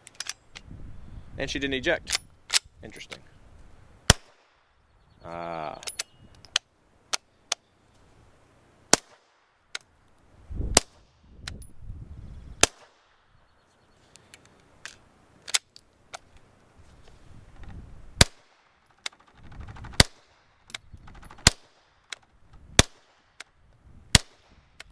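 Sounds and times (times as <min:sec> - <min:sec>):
suppressed pistol shots: 0:04.1 - 0:04.5, 0:08.9 - 0:09.4, 0:12.6 - 0:13.2, 0:18.2 - 0:20.4, 0:21.2 - 0:21.8, 0:22.8 - 0:23.4.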